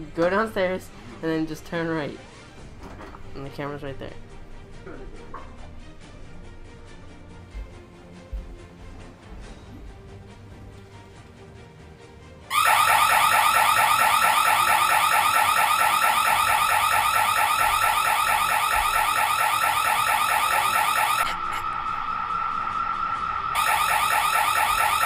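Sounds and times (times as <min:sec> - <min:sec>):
house alarm siren warbling: 0:12.5 - 0:25.0.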